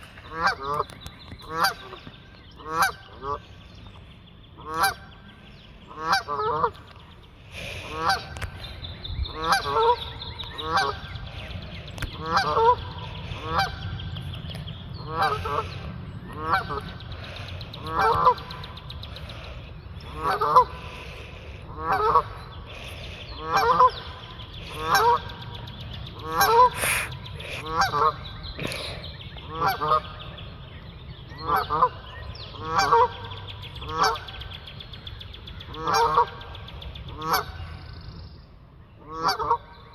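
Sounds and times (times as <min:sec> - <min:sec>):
geese honking: 0:00.1 - 0:03.4, 0:04.6 - 0:05.1, 0:05.9 - 0:06.8, 0:07.6 - 0:08.4, 0:09.3 - 0:13.9, 0:15.0 - 0:30.3, 0:31.4 - 0:34.3, 0:35.8 - 0:36.5, 0:37.1 - 0:37.6, 0:39.1 - 0:39.7.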